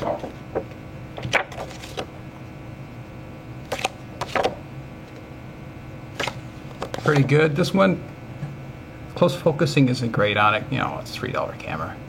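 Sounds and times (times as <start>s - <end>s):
paper rustling and tapping: 0.0s - 2.1s, 3.7s - 4.6s
faint steady hum: 0.0s - 12.0s.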